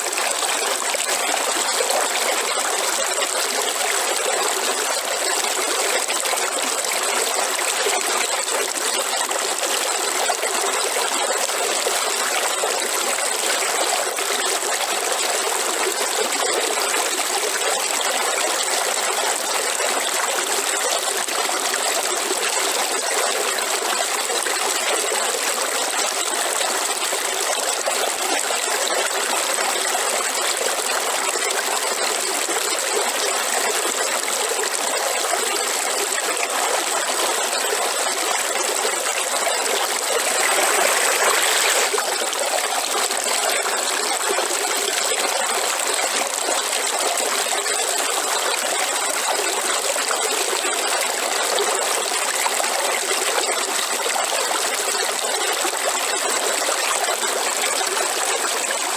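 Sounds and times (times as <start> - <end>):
river water babbling: 32.2 - 51.7.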